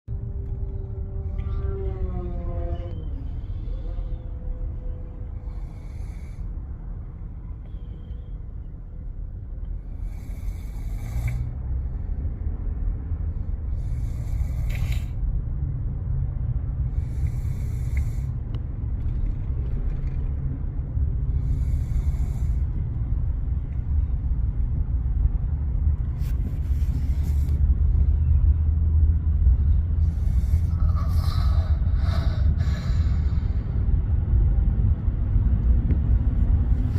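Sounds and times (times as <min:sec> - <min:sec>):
steady low rumble: 0:00.1 - 0:36.9
person snoring: 0:30.2 - 0:33.3.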